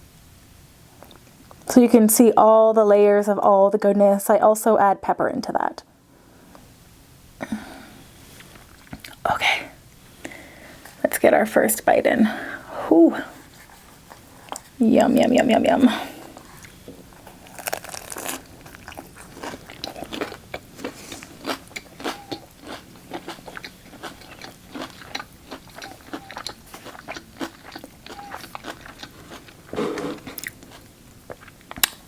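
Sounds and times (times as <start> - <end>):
close-miked chewing: 16.3 - 32.0.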